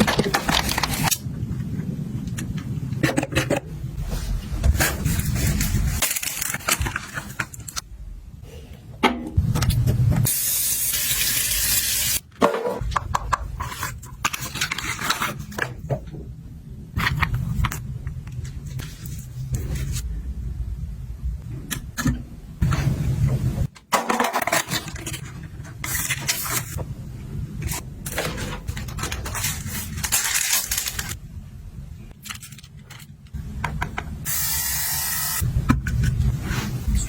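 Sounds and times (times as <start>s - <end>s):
packaging clicks and scrapes: 0.0s - 7.8s, 13.4s - 16.1s, 23.7s - 26.8s, 27.6s - 31.2s, 32.1s - 33.4s
low rumble: 16.1s - 23.7s.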